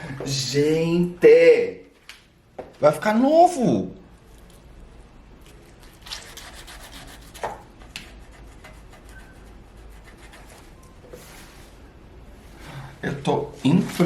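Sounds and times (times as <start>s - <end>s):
gritty rubbing on copper: 6.0s - 11.7s.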